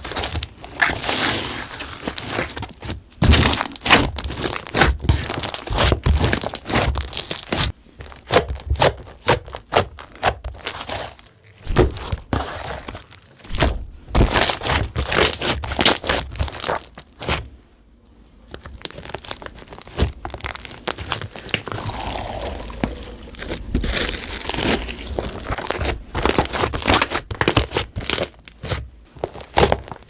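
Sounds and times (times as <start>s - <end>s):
slime squeezed by hand: 21.4s - 27.2s.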